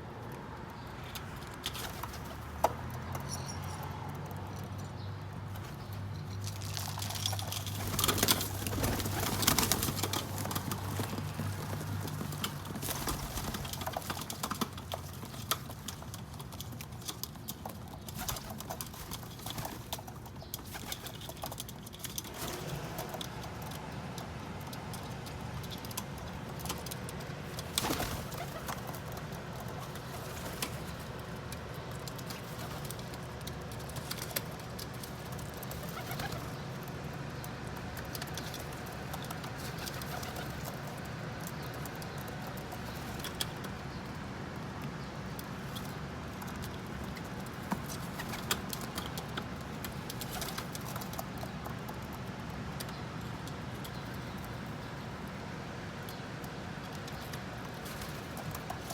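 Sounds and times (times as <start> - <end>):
pigeons cooing: 27.4 - 31.2, 35.6 - 37.3, 38.5 - 43.5.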